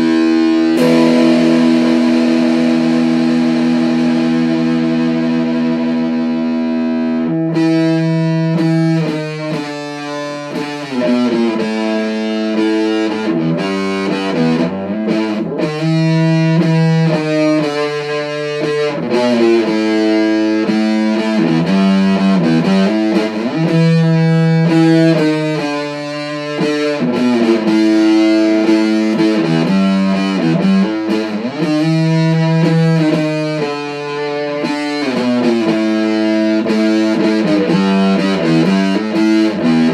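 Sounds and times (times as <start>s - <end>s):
distorted electric guitar riff: 0.7s - 7.7s.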